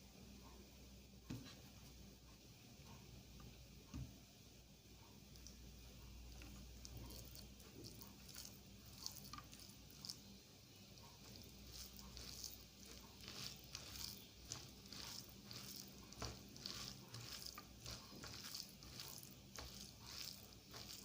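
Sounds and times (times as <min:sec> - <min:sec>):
wet chewing sounds: 0:05.3 - 0:21.0.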